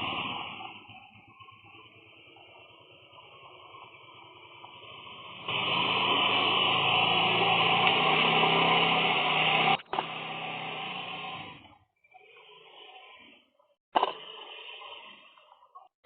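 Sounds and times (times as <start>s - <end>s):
small motor humming: 2.7s - 13.4s.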